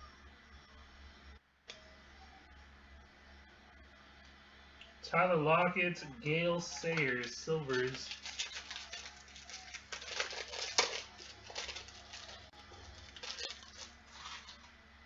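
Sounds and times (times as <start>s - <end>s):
cards rustling: 6.6s - 14.7s
wrapper crinkling and tearing: 6.7s - 14.7s.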